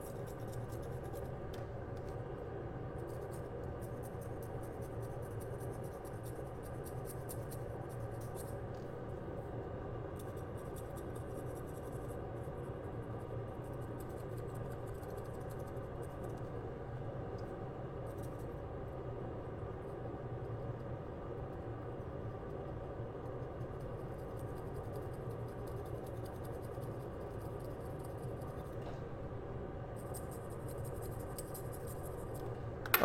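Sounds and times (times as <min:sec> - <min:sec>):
steady low hum: 0:00.0 - 0:33.0.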